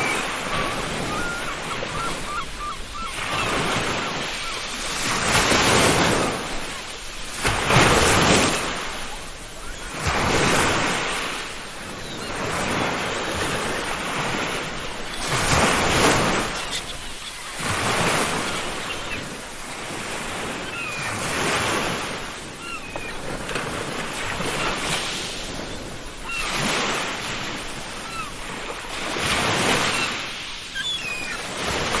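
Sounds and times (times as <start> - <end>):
faint seagull calls: 0.0 - 4.9, 11.6 - 19.4, 20.4 - 23.4, 25.7 - 27.0, 27.7 - 31.9
ocean surf breaking on beach: 0.0 - 32.0.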